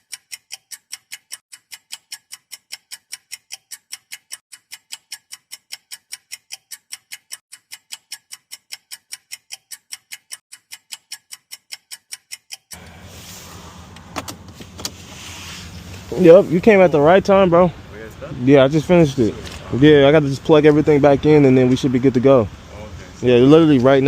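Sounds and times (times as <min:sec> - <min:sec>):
clock ticking: 0:00.0 - 0:12.8
sharp clicks: 0:00.0 - 0:12.8
steady outdoor hum: 0:12.8 - 0:24.0.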